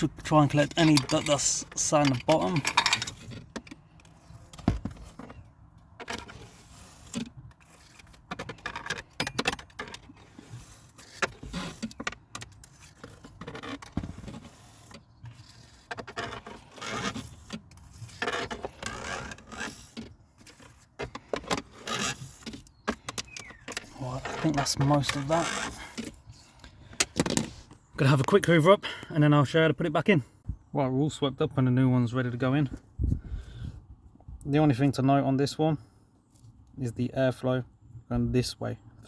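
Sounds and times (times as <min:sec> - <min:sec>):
pipe cleaner scraping plastic: 0:00.0 - 0:27.8.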